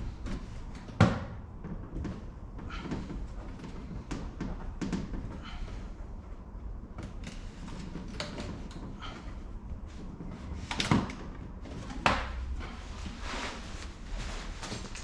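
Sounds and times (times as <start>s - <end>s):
light clicks and clatter of handling: 7.0s - 12.2s.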